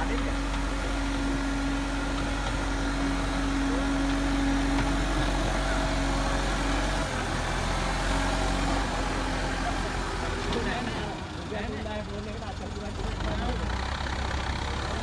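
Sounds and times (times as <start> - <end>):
construction machine engine running: 0.0 - 15.0.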